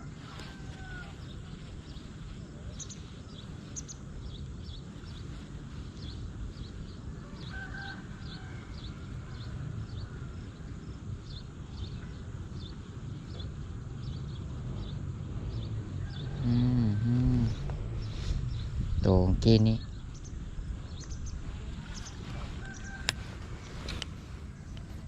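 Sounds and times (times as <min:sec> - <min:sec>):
bird chirping: 0:02.7 - 0:05.4
low rumble: 0:08.9 - 0:25.0
man humming: 0:16.4 - 0:17.7.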